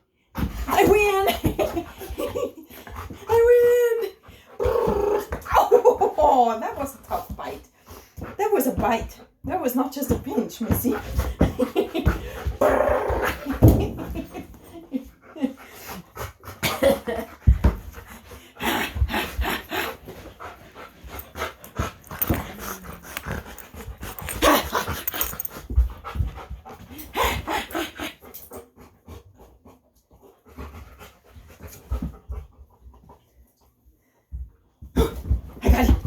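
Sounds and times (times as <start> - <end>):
dog panting: 10.5 - 12.6, 14.2 - 33.9.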